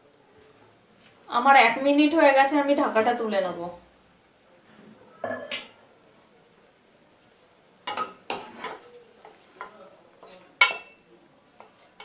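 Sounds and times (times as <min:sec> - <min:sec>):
utensil scraping frying pan: 0:07.8 - 0:12.0
utensil clinking against pan: 0:07.9 - 0:11.0.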